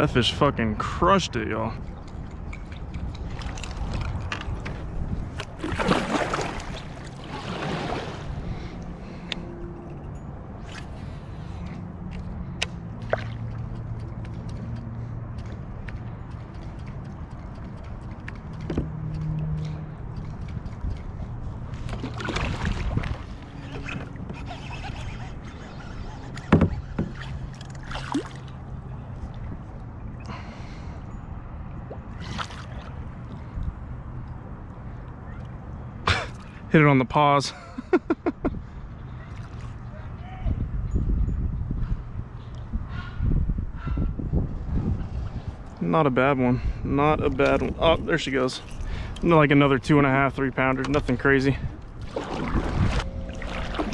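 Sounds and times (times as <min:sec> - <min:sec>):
steady low rumble: 0:00.0 - 0:24.4, 0:40.6 - 0:53.9
steady low hum: 0:00.0 - 0:35.1, 0:41.0 - 0:53.9
water splashing: 0:01.8 - 0:09.3, 0:10.6 - 0:29.6, 0:31.8 - 0:33.5, 0:47.2 - 0:53.9.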